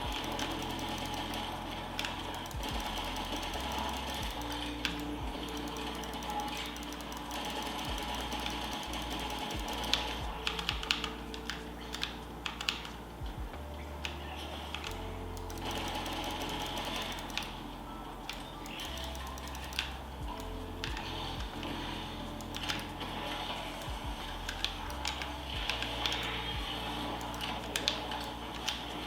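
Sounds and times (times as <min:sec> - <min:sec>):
mechanical keyboard keys clicking: 0:00.0 - 0:13.4, 0:14.0 - 0:17.6, 0:18.3 - 0:23.0
background music: 0:00.0 - 0:29.0.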